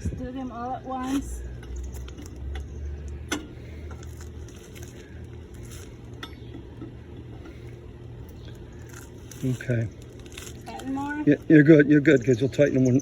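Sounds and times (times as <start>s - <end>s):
steady low hum: 0.0s - 13.0s
lug wrench on lug nuts: 1.6s - 9.1s.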